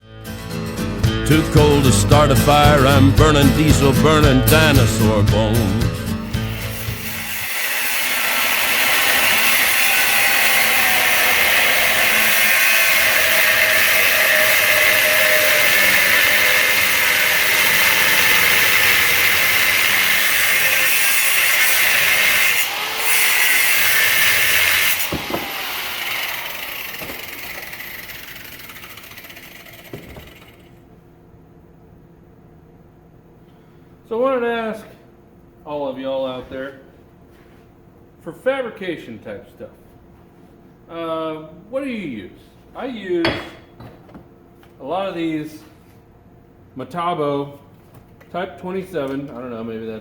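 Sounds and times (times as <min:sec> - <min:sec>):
grinder wheel winding down: 0:03.6 - 0:30.8
angle grinder cutting: 0:06.1 - 0:30.7.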